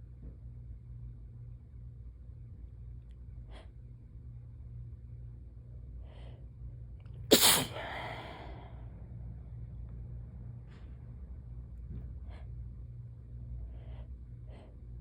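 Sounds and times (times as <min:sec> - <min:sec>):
person sneezing loudly: 0:07.3 - 0:08.2
short breath in: 0:07.5 - 0:08.9.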